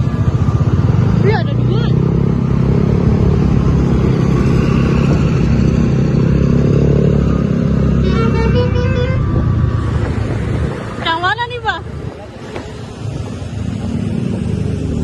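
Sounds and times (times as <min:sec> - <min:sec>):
bus engine running: 0:00.0 - 0:15.0
multi-tone bus horn: 0:08.0 - 0:09.6.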